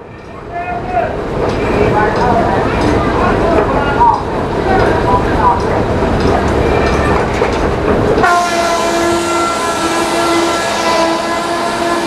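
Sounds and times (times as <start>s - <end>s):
rumbling clattering machinery: 0.0s - 8.2s.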